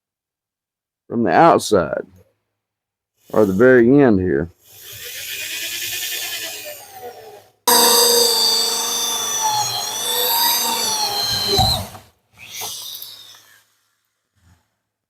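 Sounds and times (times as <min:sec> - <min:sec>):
electric drill boring into wood: 0:04.7 - 0:06.6, 0:07.7 - 0:13.4.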